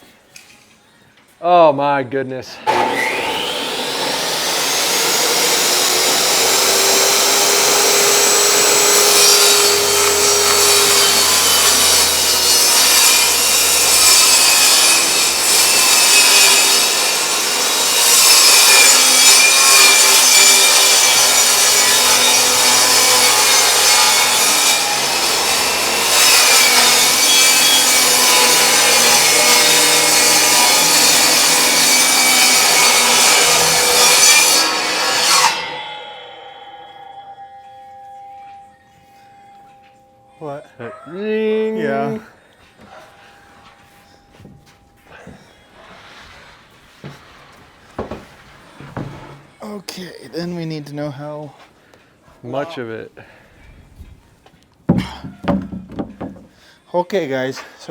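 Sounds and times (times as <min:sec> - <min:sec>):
power saw cutting wood: 0:02.6 - 0:36.8.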